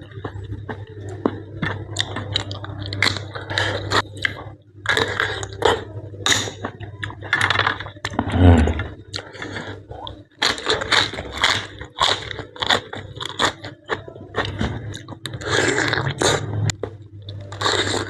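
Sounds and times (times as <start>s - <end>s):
close chewing and biting: 0.0s - 18.0s.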